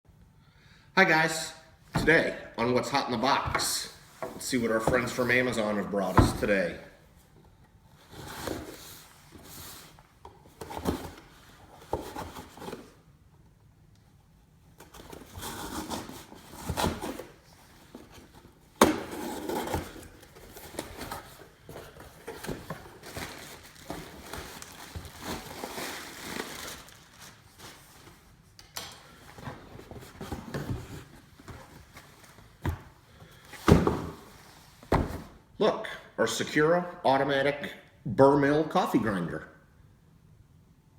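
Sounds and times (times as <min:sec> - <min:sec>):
cardboard box scraping and rustling: 0:14.9 - 0:28.2, 0:29.3 - 0:32.4.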